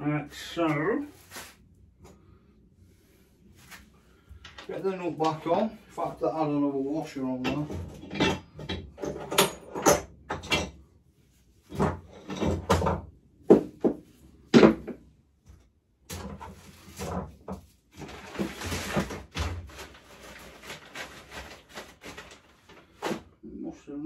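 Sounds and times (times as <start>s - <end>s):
metal tools clinking and knocking: 7.4s - 10.8s, 11.8s - 12.9s.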